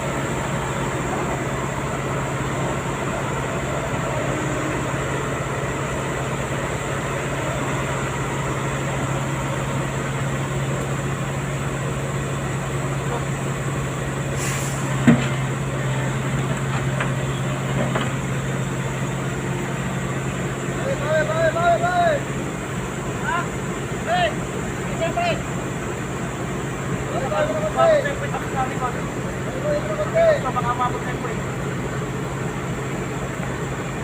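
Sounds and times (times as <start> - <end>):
diesel machinery engine humming: 0.0 - 34.0
brief hiss: 14.3 - 15.1.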